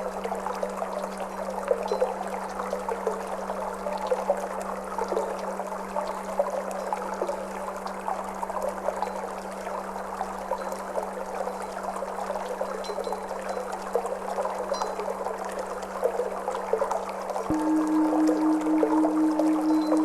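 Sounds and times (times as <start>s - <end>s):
singing bowl tone: 17.5s - 20.0s.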